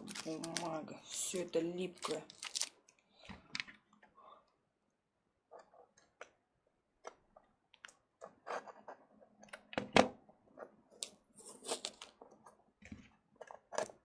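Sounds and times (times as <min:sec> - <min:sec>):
paper crinkling and tearing: 0:00.0 - 0:02.8, 0:11.4 - 0:12.2.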